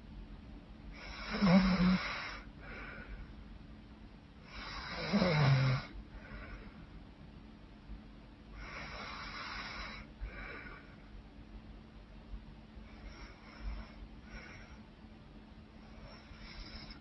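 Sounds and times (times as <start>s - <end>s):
woman snoring: 1.0s - 2.5s, 4.4s - 6.0s, 8.6s - 10.8s.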